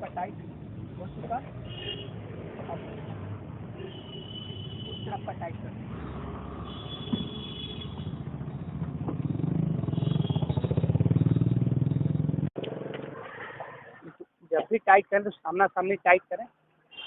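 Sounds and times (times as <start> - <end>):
engine running with pulses: 8.2 - 13.2.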